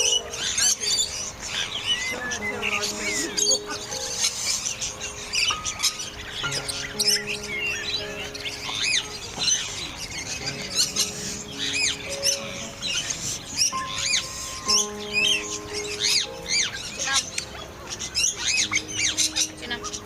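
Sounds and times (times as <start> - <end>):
background music with held notes: 0.0 - 20.0
small birds chirping and squawking: 0.0 - 20.0.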